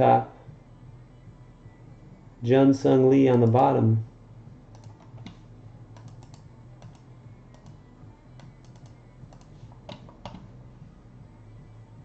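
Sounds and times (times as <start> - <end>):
low steady hum: 0.0 - 12.0
computer keyboard clicks: 4.7 - 5.4, 6.0 - 7.8, 8.4 - 10.4
mouse clicks: 4.7 - 7.8, 8.4 - 10.5.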